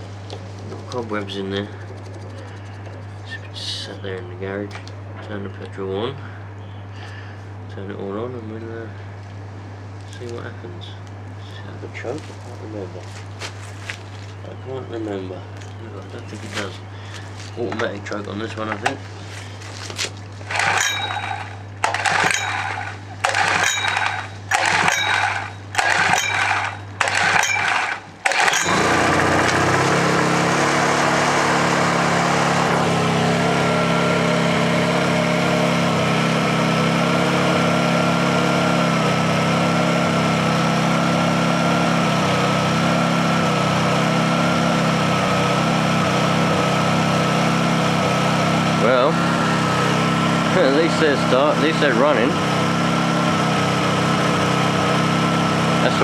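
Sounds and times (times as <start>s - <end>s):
generator recoil pulls: 20.4s - 39.4s
generator engine running: 20.4s - 56.0s.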